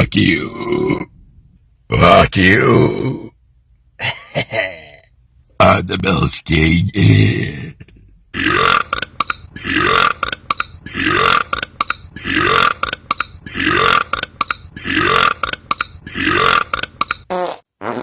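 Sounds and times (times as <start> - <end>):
man belching: 0.0 - 1.2, 1.9 - 3.3, 6.9 - 17.0.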